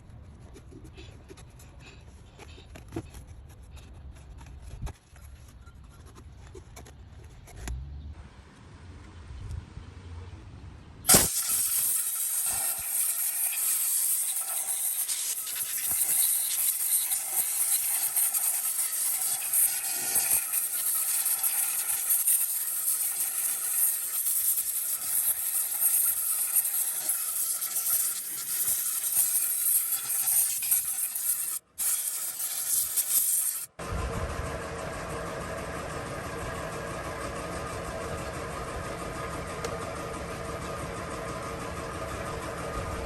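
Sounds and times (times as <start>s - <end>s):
car engine idling: 33.8s - 43.0s.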